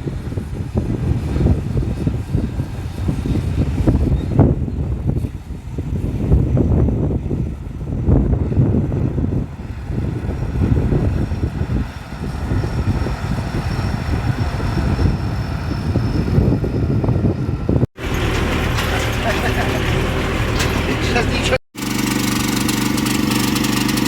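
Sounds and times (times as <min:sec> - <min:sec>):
wind buffeting microphone: 0:00.0 - 0:24.0
combine harvester engine running: 0:18.0 - 0:24.0.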